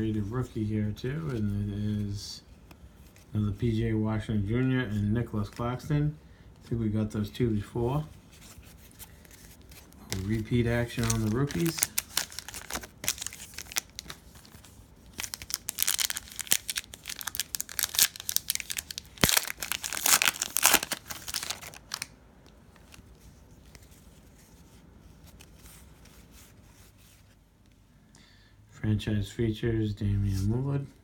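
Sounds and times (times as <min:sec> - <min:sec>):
plastic wrapper tearing and crinkling: 0:09.7 - 0:22.2.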